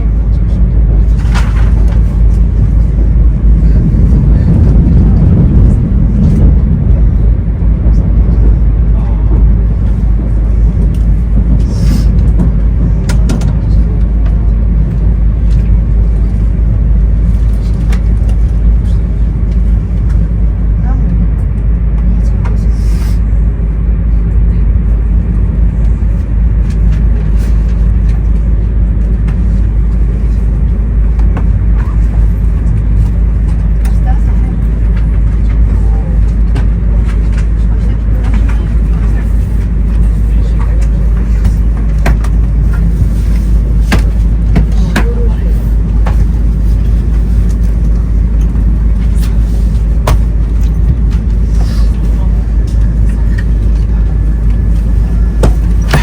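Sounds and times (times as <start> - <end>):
train interior low rumble: 0.0 - 56.0.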